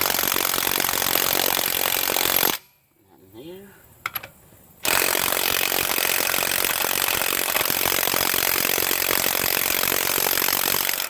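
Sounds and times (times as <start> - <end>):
impact wrench hammering: 4.0 - 11.0.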